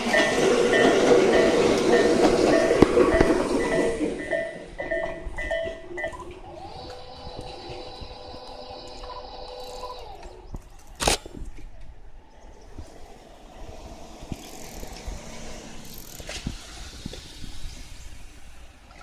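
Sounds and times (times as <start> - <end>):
level-crossing warning bell: 0.0 - 10.2.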